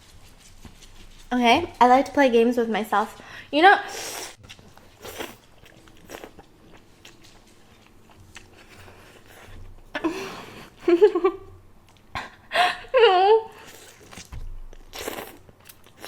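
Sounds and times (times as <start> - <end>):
person chewing food: 4.3 - 9.9, 13.6 - 16.0.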